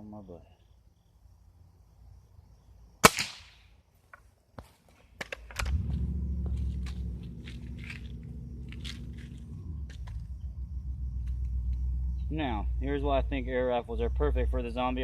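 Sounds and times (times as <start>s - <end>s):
air rifle clicks and crunches: 5.1s - 5.8s
steady low rumble: 5.6s - 15.0s.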